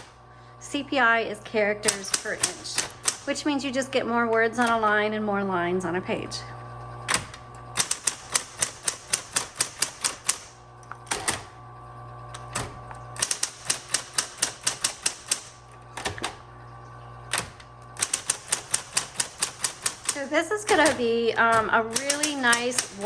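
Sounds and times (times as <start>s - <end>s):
steady hum: 0.0s - 23.0s
typewriter key strikes: 1.8s - 3.3s, 7.1s - 11.5s, 12.6s - 16.1s, 17.3s - 23.0s.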